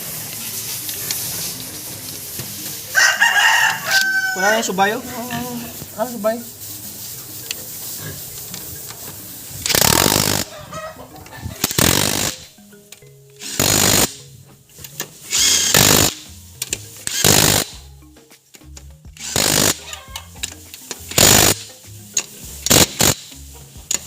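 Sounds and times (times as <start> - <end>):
background music: 0.0 - 24.0
impact wrench firing: 9.6 - 10.5, 11.6 - 12.5, 13.4 - 14.2, 15.3 - 17.8, 19.2 - 21.7, 22.6 - 23.3.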